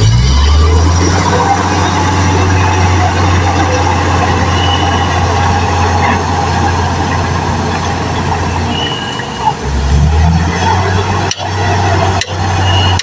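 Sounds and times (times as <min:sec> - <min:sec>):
heavy diesel engine humming: 0:00.0 - 0:13.0.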